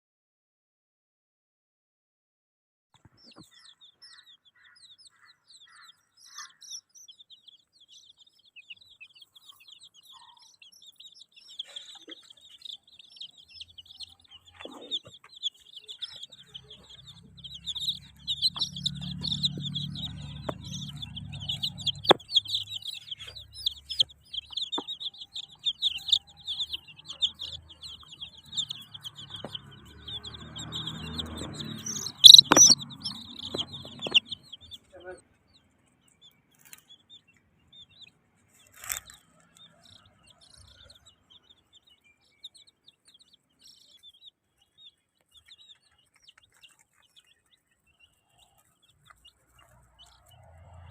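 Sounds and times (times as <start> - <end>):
baby chicks peeping: 3.0 - 50.9
sharp knocks: 32.0 - 34.3.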